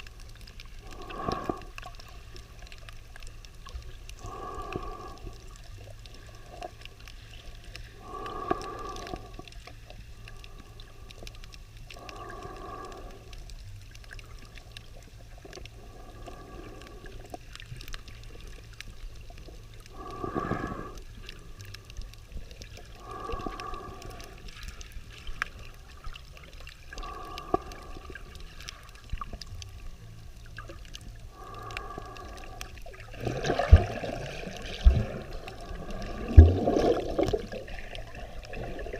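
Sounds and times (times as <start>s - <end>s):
muffled underwater breathing: 0.0s - 38.9s
rush of bubbles: 30.5s - 38.9s.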